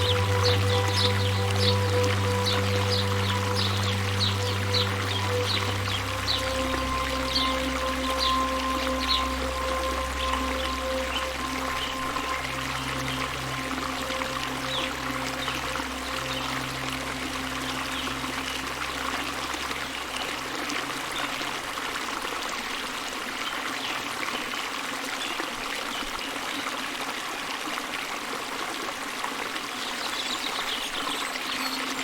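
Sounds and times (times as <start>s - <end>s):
soft held music notes: 0.0s - 22.6s
stream running water: 0.0s - 32.0s.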